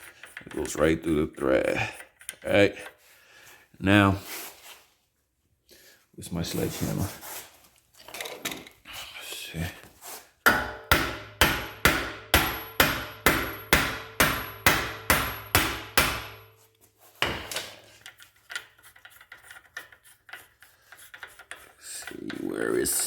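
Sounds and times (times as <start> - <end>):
sledgehammer striking metal: 10.5 - 16.5, 17.2 - 17.9
metallic ring: 12.4 - 15.6.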